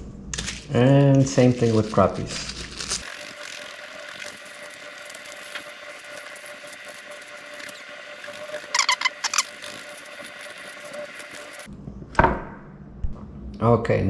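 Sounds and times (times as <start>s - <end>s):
spoon scraping fish scales: 1.6s - 11.7s
loud high squeaks: 3.0s - 11.7s.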